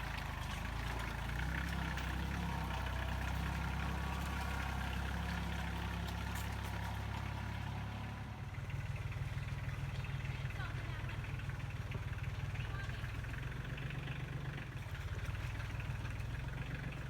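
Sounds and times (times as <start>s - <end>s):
tractor engine running: 0.0s - 17.0s.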